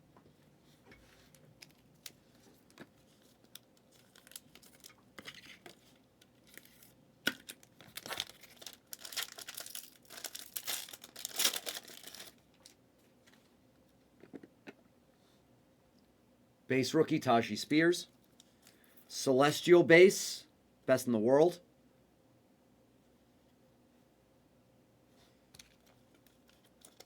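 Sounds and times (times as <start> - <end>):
wrapper tearing and crinkling: 3.2 - 5.0, 6.4 - 12.8, 26.5 - 27.0.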